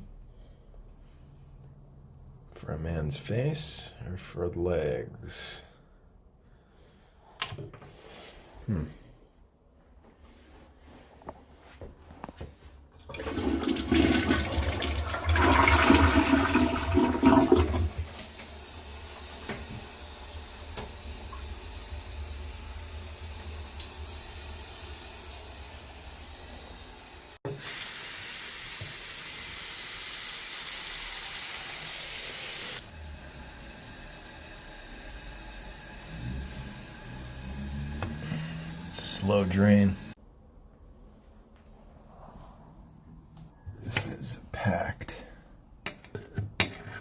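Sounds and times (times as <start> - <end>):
toilet flushing: 13.0 - 40.2
tank refilling hiss: 13.2 - 40.2.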